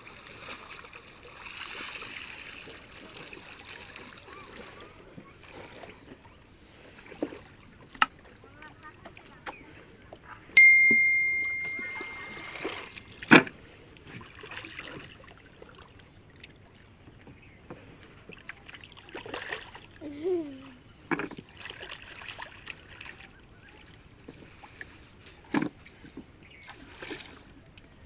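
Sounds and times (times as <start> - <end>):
water splashing and trickling: 0.0 - 28.0
metallic bell-like ring: 10.6 - 12.8.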